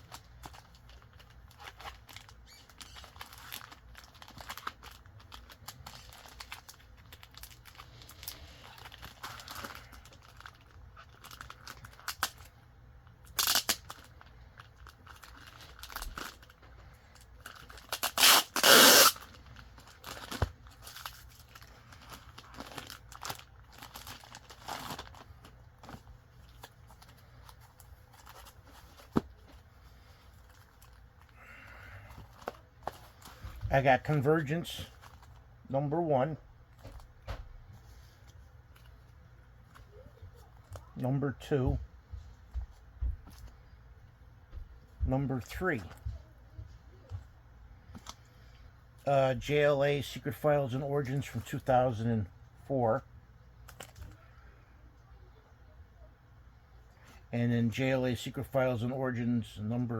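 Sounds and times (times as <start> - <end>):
paper and tape tearing: 13.3 - 13.9, 17.7 - 19.4.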